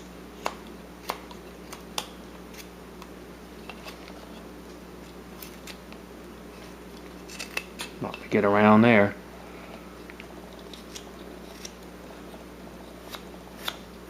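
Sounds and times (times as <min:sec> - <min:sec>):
steady low hum: 0:00.0 - 0:14.0
carving knife cutting wood: 0:10.6 - 0:13.9.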